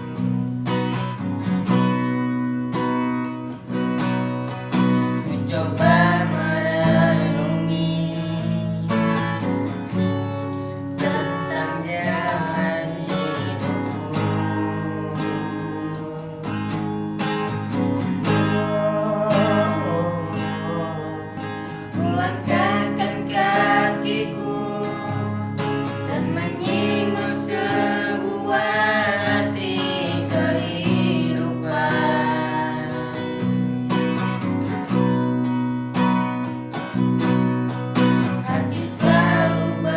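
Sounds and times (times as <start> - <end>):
strummed acoustic guitar: 0.0 - 39.9
person singing: 5.2 - 9.4, 11.0 - 16.8, 18.2 - 33.4, 38.3 - 39.9.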